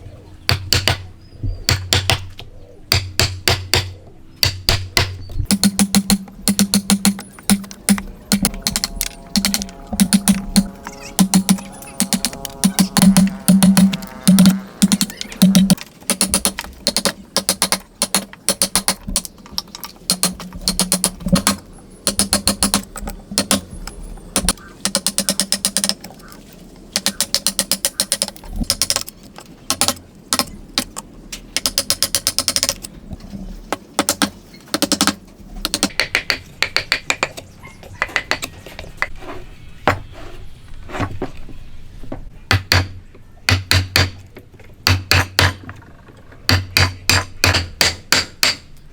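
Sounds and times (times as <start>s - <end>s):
hand tools clicking on wood: 2.9s - 32.9s, 33.7s - 39.1s.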